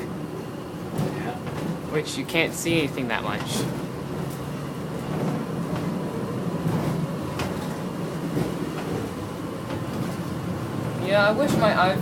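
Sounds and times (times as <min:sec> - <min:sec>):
train rumbling from inside: 0:00.0 - 0:12.0.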